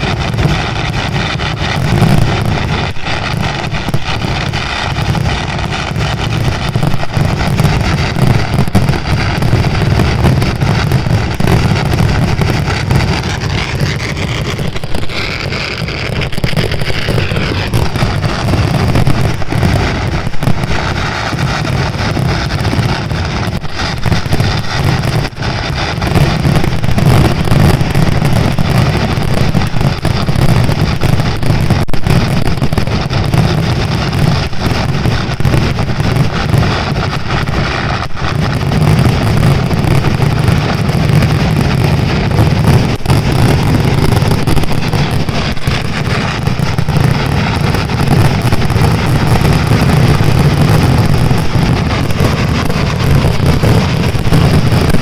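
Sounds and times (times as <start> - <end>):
fireworks bursting: 0.0 - 55.0.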